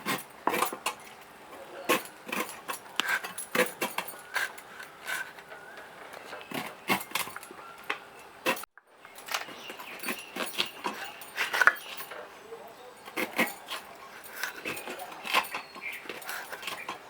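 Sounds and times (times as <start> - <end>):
blade cutting fruit: 12.7 - 17.0.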